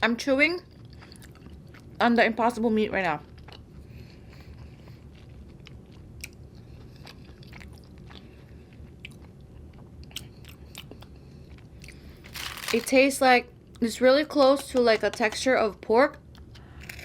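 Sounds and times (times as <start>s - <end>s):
person chewing food: 0.7s - 2.0s, 3.2s - 12.8s, 16.2s - 17.0s.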